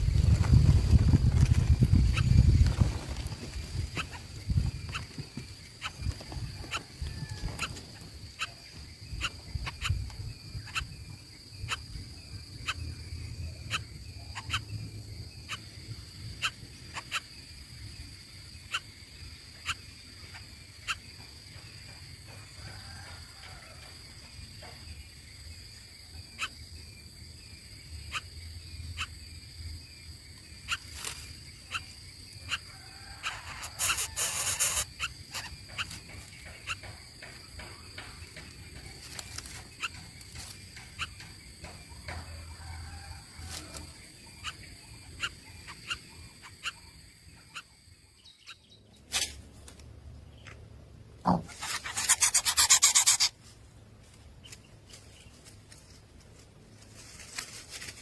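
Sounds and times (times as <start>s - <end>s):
nestlings rasping begging calls: 1.6s - 3.1s, 3.7s - 11.9s, 16.4s - 17.3s, 30.6s - 37.3s, 43.6s - 47.7s, 51.2s - 53.4s
small clicks and scratches: 33.5s - 34.9s.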